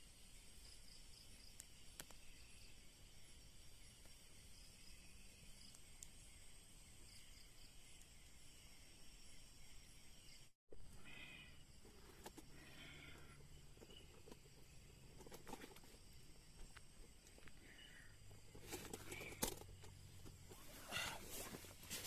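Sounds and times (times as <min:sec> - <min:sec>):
faint forest ambience: 0:00.0 - 0:22.0
animal calls: 0:10.9 - 0:13.5, 0:20.5 - 0:22.0.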